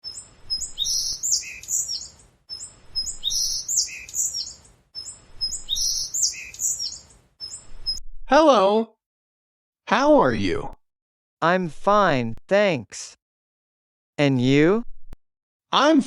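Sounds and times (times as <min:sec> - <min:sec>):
bird chirps and whistles: 0:00.0 - 0:08.1.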